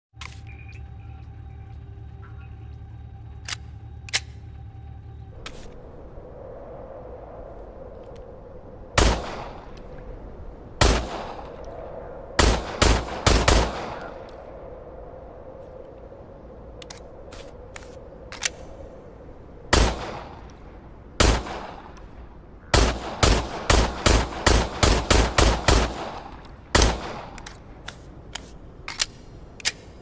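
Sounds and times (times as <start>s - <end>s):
small sharp clicks: 3.4s - 4.5s, 27.2s - 30.0s
pistol shots echoing: 22.7s - 27.4s.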